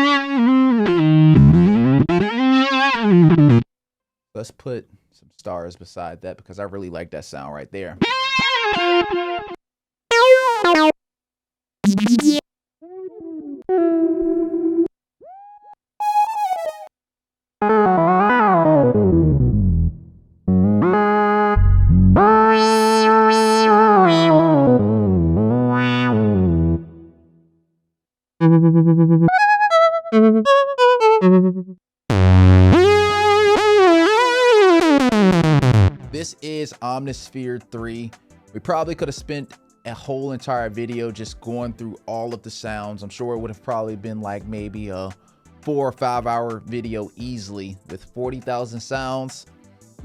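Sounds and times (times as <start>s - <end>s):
synth phrases: 11.8s - 12.4s, 30.1s - 36.0s
synthesizer pulsing notes: 11.8s - 12.4s, 17.8s - 26.9s, 28.4s - 36.0s
synthesizer tone gliding in pitch: 11.8s - 12.4s, 22.3s - 24.6s.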